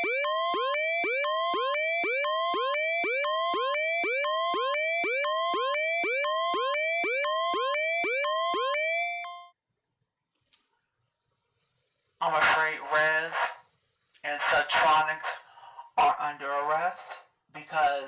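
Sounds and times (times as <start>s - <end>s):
electronic siren alarm: 0.0s - 9.6s.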